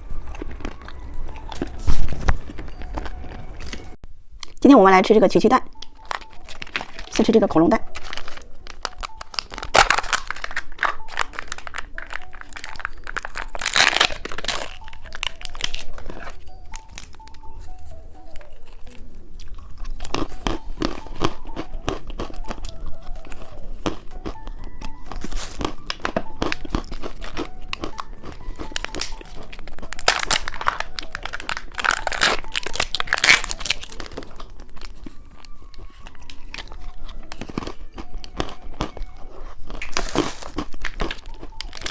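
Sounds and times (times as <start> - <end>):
candy crunching: 0.0 - 4.6, 5.7 - 41.9
background music: 0.0 - 41.9
plastic packaging crinkling and tearing: 5.8 - 21.4, 25.0 - 41.9.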